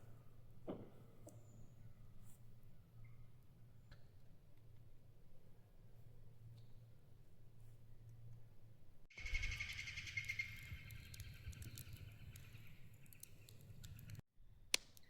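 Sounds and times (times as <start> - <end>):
high rapid trilling animal call: 9.2 - 12.7
scattered clicks: 10.2 - 15.0.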